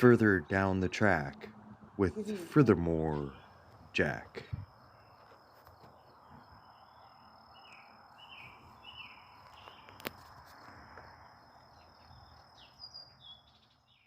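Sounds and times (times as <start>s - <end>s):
bird chirps: 4.5s - 14.0s.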